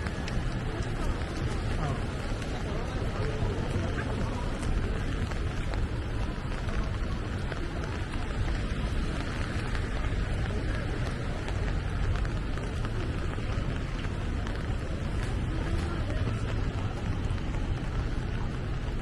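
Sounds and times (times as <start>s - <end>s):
rain hissing: 0.0s - 19.0s
raindrop patters: 0.0s - 19.0s
steady low rumble: 0.0s - 19.0s.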